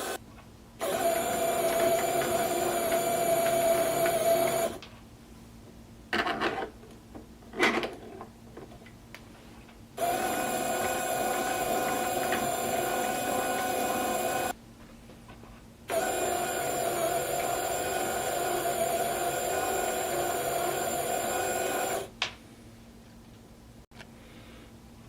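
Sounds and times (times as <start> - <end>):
plastic gears whirring and whining: 0.8 - 4.8, 10.0 - 14.6, 15.9 - 22.1.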